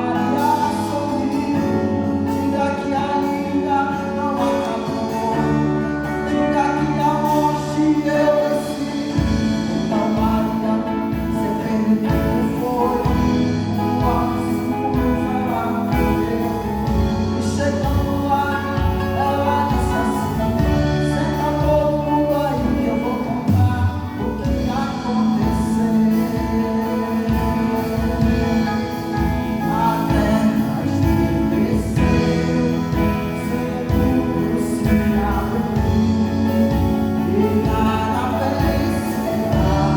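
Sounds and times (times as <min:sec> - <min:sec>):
gospel band playing and singing: 0:00.0 - 0:39.9
steady drum beat: 0:08.7 - 0:39.9.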